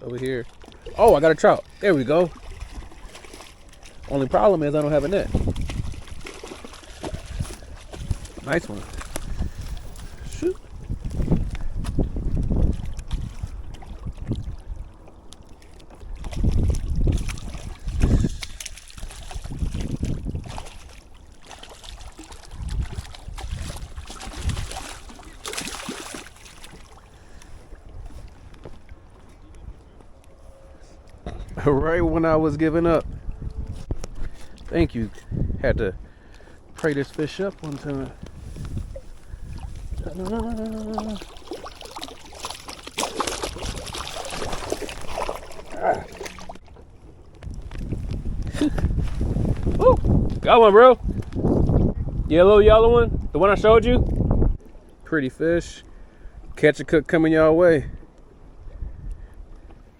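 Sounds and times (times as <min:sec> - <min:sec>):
faint water trickling: 0:00.0 - 0:52.5
wind buffeting microphone: 0:00.0 - 0:54.8, 0:57.2 - 0:59.9
person humming: 0:40.1 - 0:41.3.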